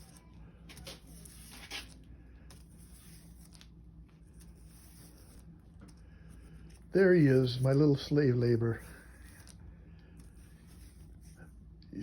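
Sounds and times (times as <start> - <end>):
steady low hum: 0.0 - 12.0
sandpaper scrape: 0.8 - 2.0, 2.7 - 3.6, 4.3 - 5.4.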